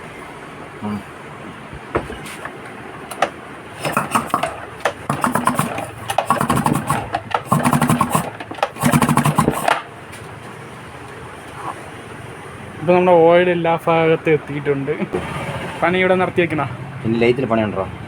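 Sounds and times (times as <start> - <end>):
outboard engine rattling whir: 3.2 - 10.0.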